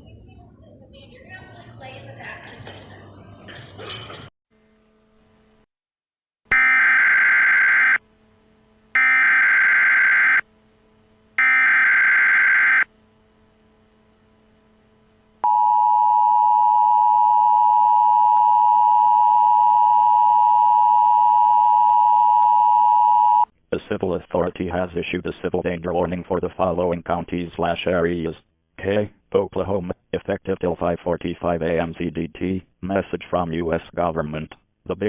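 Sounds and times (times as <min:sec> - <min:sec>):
loud steady attention tone: 0:06.5 - 0:23.5.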